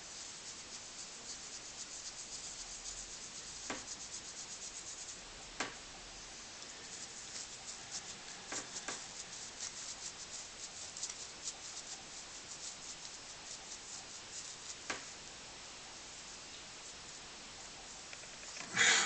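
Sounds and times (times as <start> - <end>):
scratchy rubbing of polishing: 0.0 - 5.2, 6.2 - 15.1.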